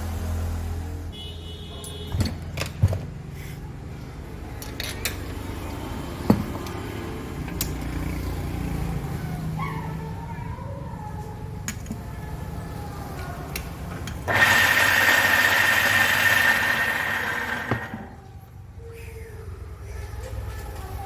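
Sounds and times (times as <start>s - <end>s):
low electric motor hum: 14.1s - 18.6s.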